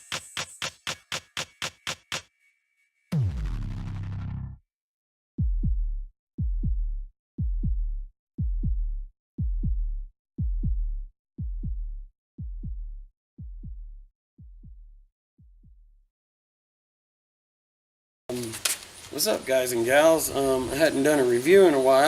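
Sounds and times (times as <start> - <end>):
heartbeat deep thumps: 5.4 - 16.0.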